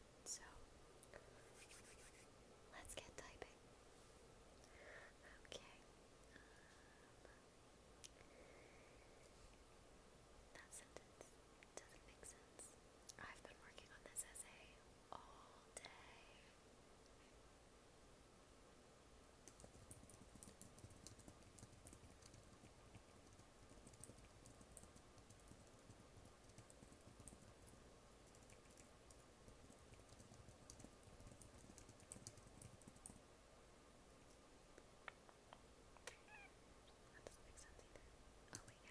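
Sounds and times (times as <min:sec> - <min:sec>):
faint keyboard typing: 0:19.4 - 0:33.3, 0:37.2 - 0:38.9.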